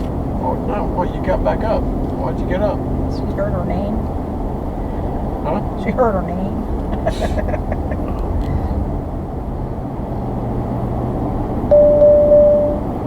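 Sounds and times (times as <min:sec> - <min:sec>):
road and engine noise in cab: 0:00.0 - 0:13.0
navigation warning beep: 0:11.7 - 0:12.9.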